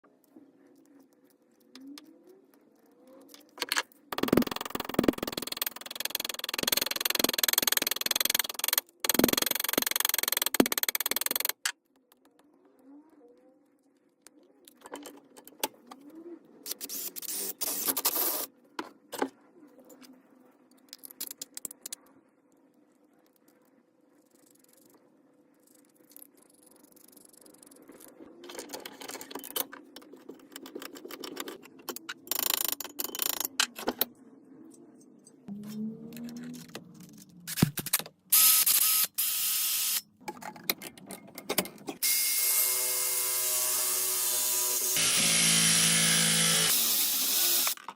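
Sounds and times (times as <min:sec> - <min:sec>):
power tool whining: 0:42.0 - 0:47.8.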